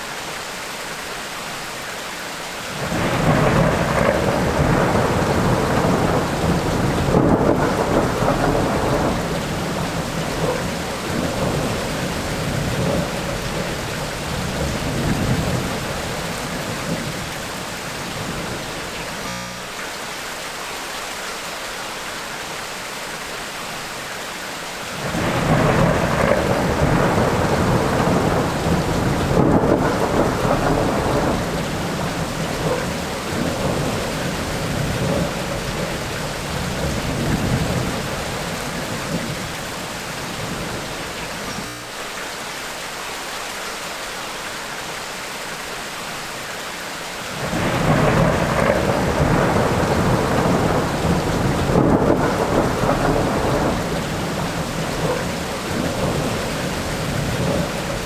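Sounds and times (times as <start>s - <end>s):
steady rain: 0.0s - 58.0s
rolling thunder: 2.8s - 19.3s, 25.0s - 41.7s, 47.3s - 58.0s.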